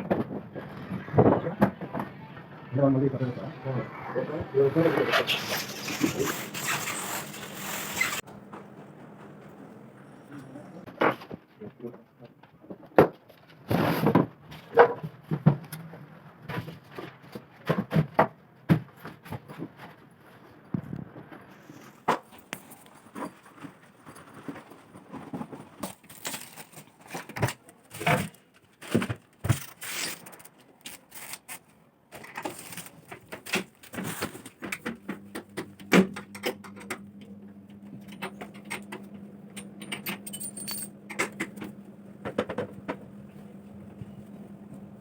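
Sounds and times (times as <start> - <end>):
rustling: 21.6 - 34.7
objects clicking and rattling: 22.4 - 37.0.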